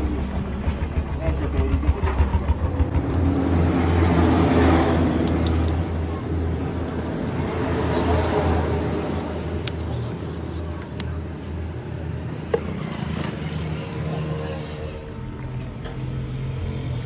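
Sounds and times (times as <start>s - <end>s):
motorcycle engine running: 0.0s - 5.1s.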